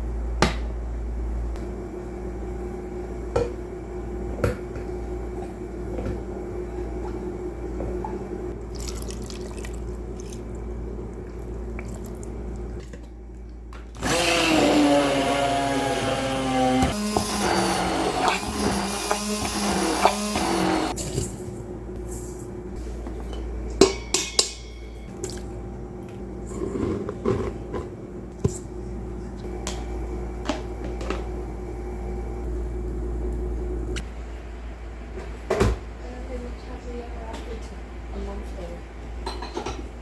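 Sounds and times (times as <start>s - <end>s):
faint steady hum: 0.0s - 14.0s, 14.6s - 40.0s
electric mixer motor running: 14.0s - 21.0s
kitchen utensils and dishes knocking: 23.8s - 25.0s.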